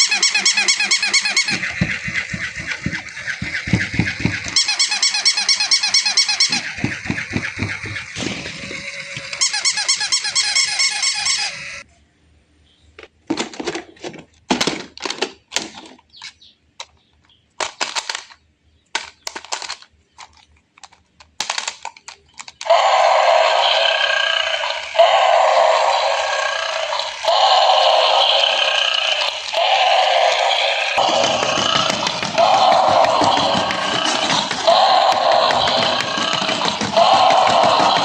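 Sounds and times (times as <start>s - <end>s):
electronic toy pulsing squeaks: 0.0s - 11.8s, 22.7s - 38.0s
sharp clicks and knocks: 31.0s - 38.0s.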